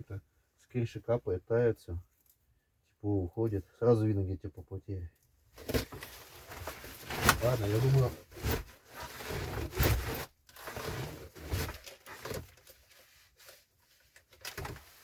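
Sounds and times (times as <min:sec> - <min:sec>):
rustling and scraping: 0:05.5 - 0:15.0.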